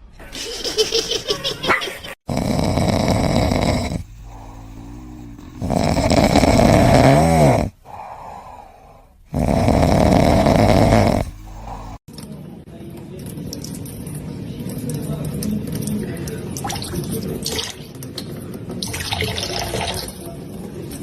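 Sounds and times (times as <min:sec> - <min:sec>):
pet snoring loudly: 0:02.2 - 0:12.0
whistling snore tone: 0:09.4 - 0:12.0.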